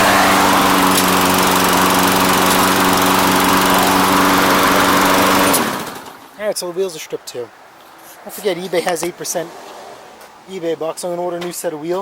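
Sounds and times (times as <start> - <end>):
lawn mower engine running: 0.0 - 6.3.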